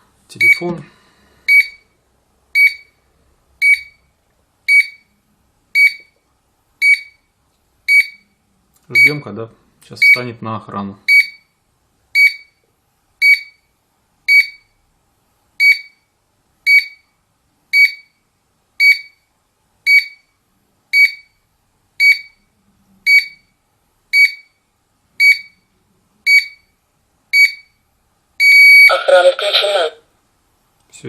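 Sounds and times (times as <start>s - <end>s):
short high alarm beeps: 1.5s - 1.8s, 4.7s - 5.1s, 5.8s - 6.1s, 6.8s - 7.2s, 7.9s - 8.3s, 9.0s - 9.3s, 11.1s - 11.5s, 12.2s - 12.6s, 13.2s - 13.6s, 14.3s - 14.7s, 15.6s - 16.0s, 16.7s - 17.0s, 17.8s - 18.1s, 18.8s - 19.2s, 21.0s - 21.4s, 22.0s - 22.4s, 23.1s - 23.5s, 24.2s - 24.6s, 25.2s - 25.6s, 26.3s - 26.7s, 27.4s - 27.8s, 28.4s - 29.0s.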